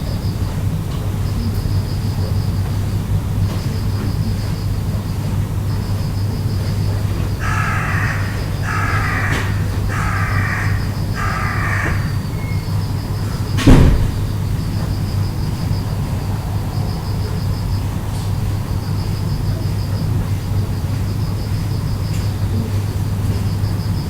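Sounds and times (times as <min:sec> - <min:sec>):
bird calling: 0:06.7 - 0:13.6
sharp thump: 0:13.6 - 0:14.3.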